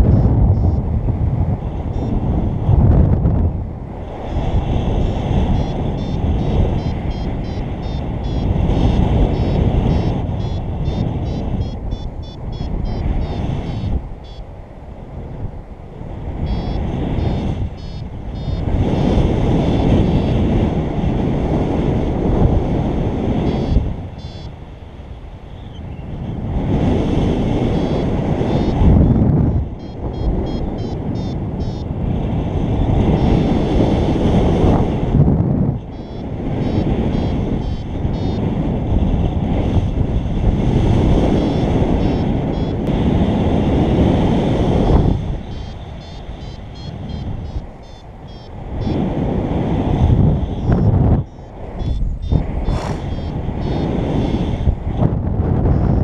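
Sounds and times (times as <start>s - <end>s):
variometer high beeps: 0.0s - 0.8s, 1.9s - 2.3s, 5.4s - 14.5s, 16.4s - 20.3s, 23.4s - 24.6s, 27.6s - 31.9s, 32.8s - 34.1s, 35.7s - 38.6s, 40.8s - 42.9s, 45.0s - 49.1s, 50.1s - 54.7s, 55.6s - 56.0s
wind buffeting microphone: 0.0s - 56.0s.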